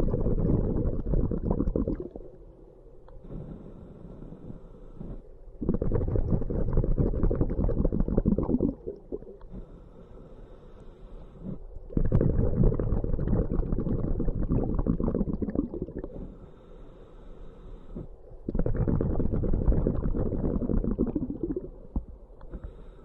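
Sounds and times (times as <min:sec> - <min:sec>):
diver exhaling bubbles underwater: 0:00.0 - 0:02.4, 0:05.6 - 0:09.5, 0:11.9 - 0:16.3, 0:18.5 - 0:22.1.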